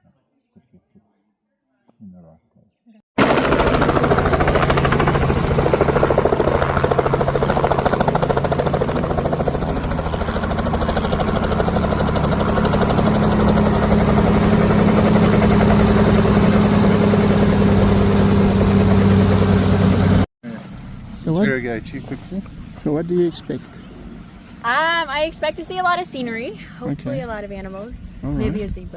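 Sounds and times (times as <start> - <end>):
helicopter rotor beat: 3.2 - 20.3, 21.2 - 28.9
helicopter engine hum: 3.2 - 26.0.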